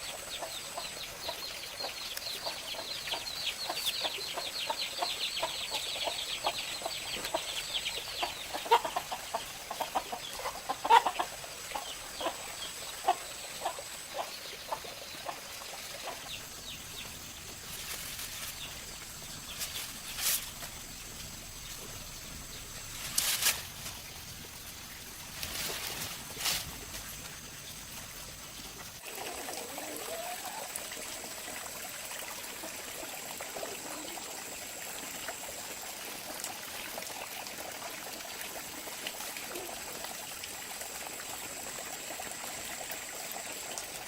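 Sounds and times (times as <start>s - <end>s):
chickens clucking: 0.0s - 21.4s.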